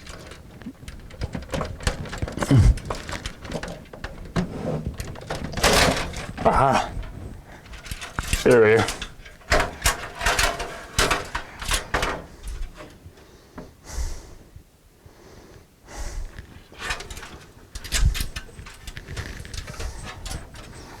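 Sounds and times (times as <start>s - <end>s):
metal clunks and knocks: 0.0s - 12.9s
metal tray sliding scrape: 4.4s - 5.0s, 9.0s - 12.3s.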